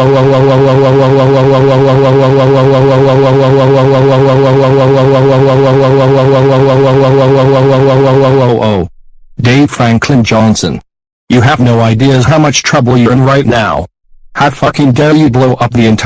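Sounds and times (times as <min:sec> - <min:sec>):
electronic buzzing with warble: 0:00.0 - 0:08.6.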